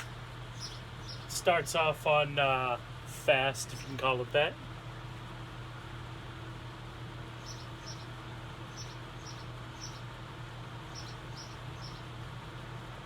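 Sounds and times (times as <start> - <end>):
ceiling fan running: 0.0 - 13.0.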